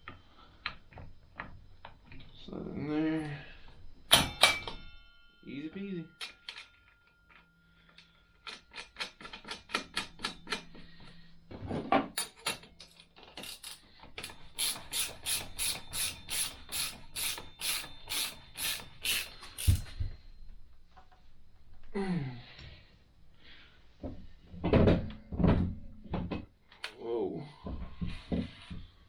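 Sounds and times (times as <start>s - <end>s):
ratchet wrench clicking: 13.4s - 19.9s.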